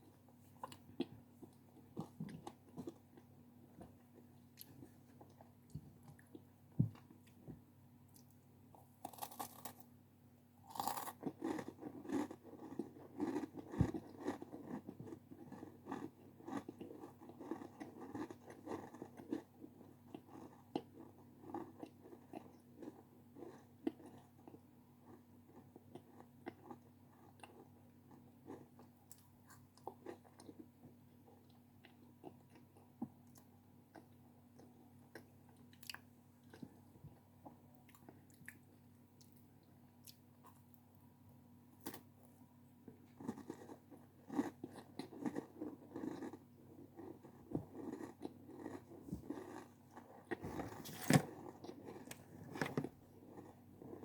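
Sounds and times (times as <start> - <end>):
crunchy snack chewing: 9.0 - 9.9, 10.7 - 30.6, 43.1 - 54.0.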